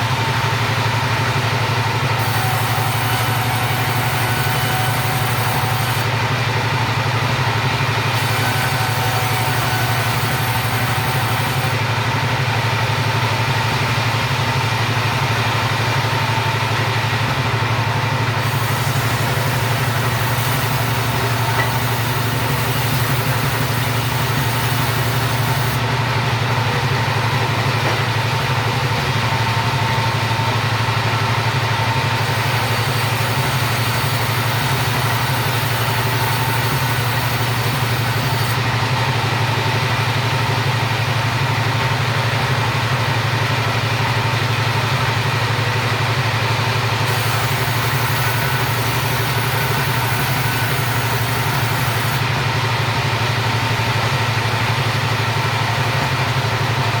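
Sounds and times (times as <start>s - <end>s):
chainsaw sawing wood: 0.0s - 57.0s.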